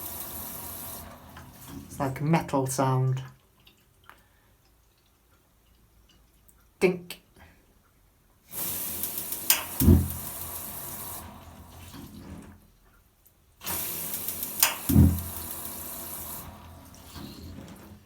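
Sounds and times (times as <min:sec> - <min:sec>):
water hissing from tap: 0:00.0 - 0:02.2, 0:08.5 - 0:12.6, 0:13.6 - 0:18.0.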